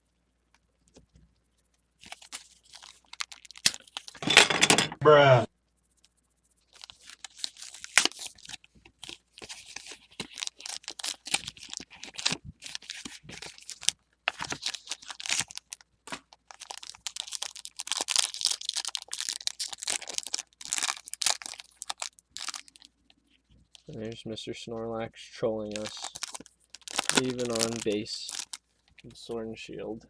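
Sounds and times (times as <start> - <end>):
foil wrapper tearing and crinkling: 2.0 - 4.6, 6.7 - 23.0, 25.6 - 29.1.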